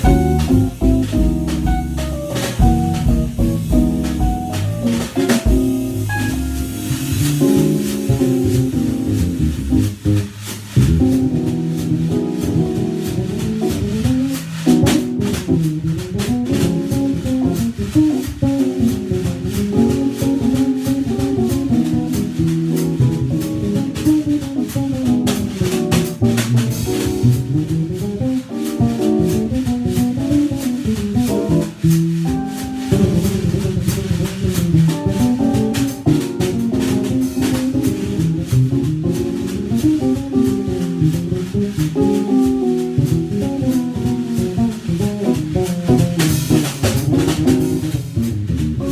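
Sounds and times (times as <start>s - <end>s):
keyboard chords: 0.0s - 10.0s
bass guitar line: 0.0s - 20.0s, 29.1s - 48.9s
light drum patter: 0.0s - 48.9s.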